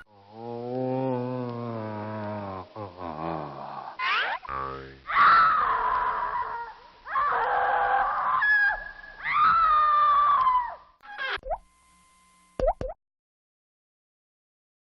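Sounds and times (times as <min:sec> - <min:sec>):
cartoon voice-like cries: 0:04.0 - 0:04.4, 0:05.1 - 0:11.4.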